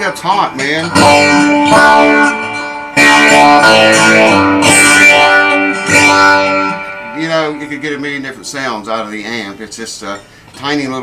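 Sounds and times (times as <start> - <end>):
acoustic guitar chords strummed: 0.0 - 8.7.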